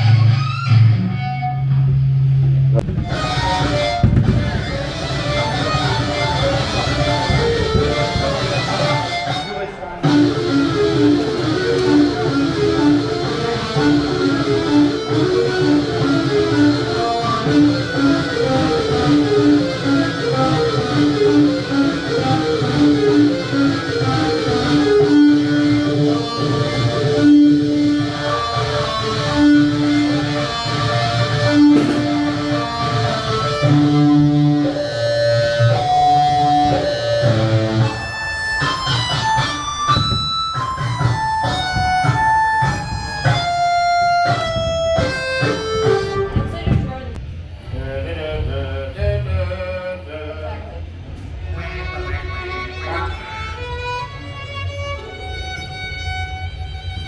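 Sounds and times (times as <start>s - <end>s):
guitar picked notes: 0.0s - 47.2s
low bass part: 1.6s - 14.8s.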